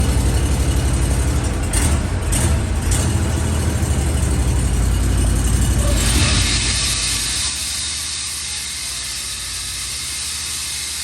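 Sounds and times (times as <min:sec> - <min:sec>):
sawmill engine rumble: 0:00.0 - 0:11.0
short hissing bursts: 0:06.2 - 0:11.0.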